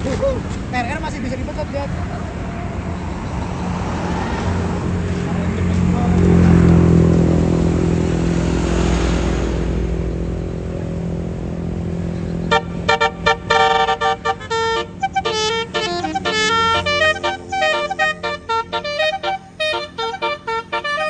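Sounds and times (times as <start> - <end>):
bus engine rumble: 0.0 - 21.0
horn playing quick melody: 12.5 - 21.0.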